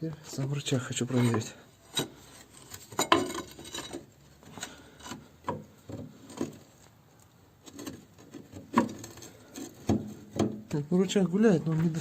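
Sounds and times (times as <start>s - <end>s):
pry bar metal knocks and scrapes: 1.0s - 6.7s, 7.6s - 10.8s.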